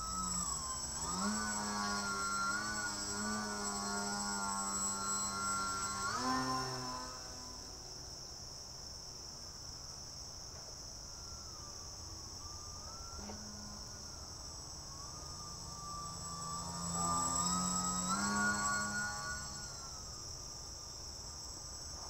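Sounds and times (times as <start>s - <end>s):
radio-controlled boat motor whine: 0.0s - 7.9s, 11.1s - 22.0s
high-pitched insect chorus: 0.0s - 22.0s.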